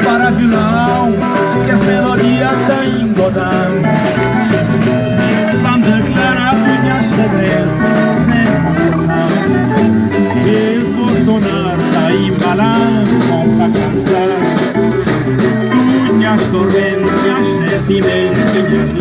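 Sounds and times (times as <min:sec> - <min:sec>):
acoustic guitar playing: 0:00.0 - 0:19.0
person singing: 0:00.0 - 0:19.0
shaker keeping time: 0:00.0 - 0:19.0.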